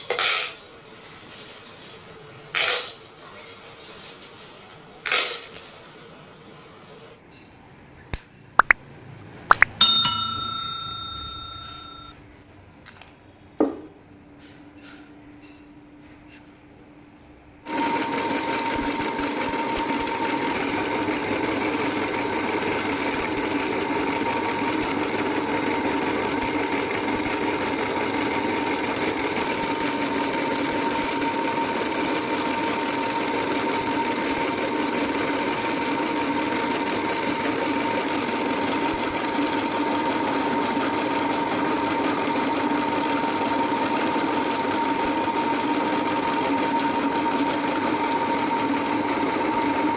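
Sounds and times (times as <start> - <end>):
electric meat grinder whining: 17.7 - 49.9.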